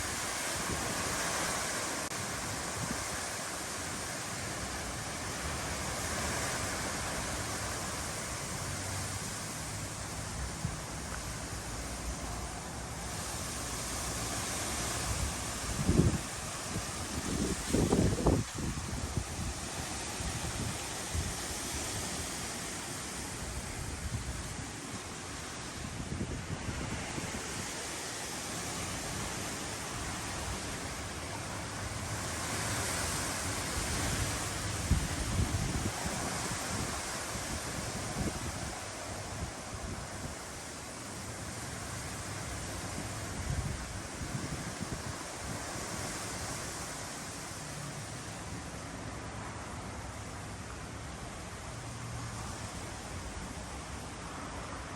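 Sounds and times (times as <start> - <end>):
wind gusts rumbling on microphone: 0.0 - 54.9
high wind rushing: 4.4 - 48.2
strong wind rushing: 14.9 - 22.2.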